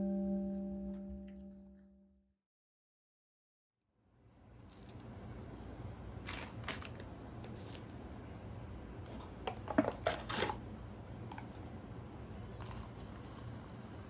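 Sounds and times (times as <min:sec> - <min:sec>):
low steady hum: 0:00.0 - 0:02.1.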